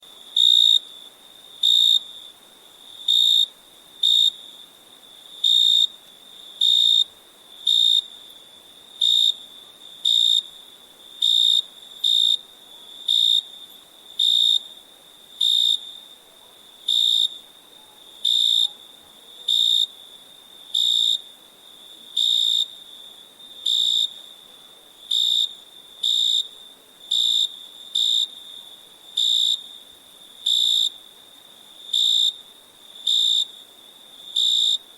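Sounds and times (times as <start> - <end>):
crickets chirping: 0.0 - 34.9.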